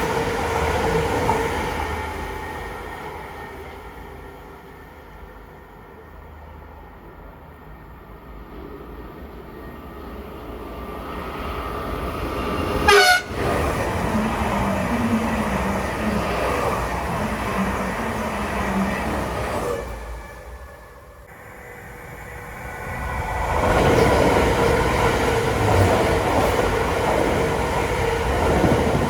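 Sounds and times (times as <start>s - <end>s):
passing train rumble: 0.0s - 29.0s
train horn toot: 12.9s - 13.5s.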